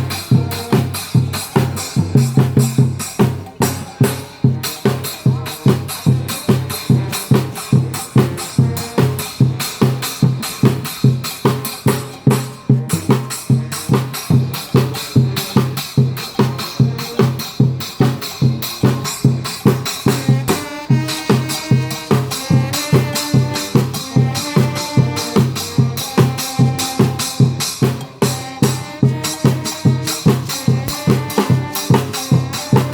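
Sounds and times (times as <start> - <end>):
horns playing melody: 0.0 - 2.8, 5.4 - 11.0, 11.8 - 15.8, 19.0 - 32.9
brass band percussion beat: 0.0 - 32.9.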